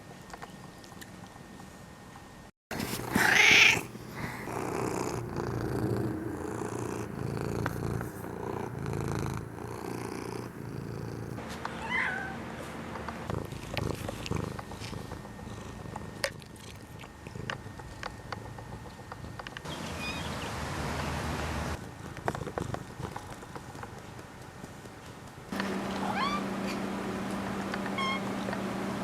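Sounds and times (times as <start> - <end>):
cat purring: 2.7 - 11.4, 13.2 - 19.6, 21.8 - 25.3
cat meowing: 3.1 - 3.9, 11.8 - 12.4, 26.0 - 26.5
cat chirp: 3.2 - 3.9, 11.8 - 12.4, 26.0 - 26.5, 28.0 - 28.3.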